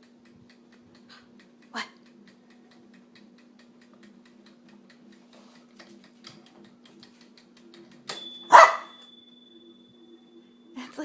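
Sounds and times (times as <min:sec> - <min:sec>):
low hum: 0:00.0 - 0:11.0
mechanical timer ticking: 0:00.0 - 0:11.0
timer bell ringing: 0:08.0 - 0:11.0
dog barking: 0:08.5 - 0:08.9.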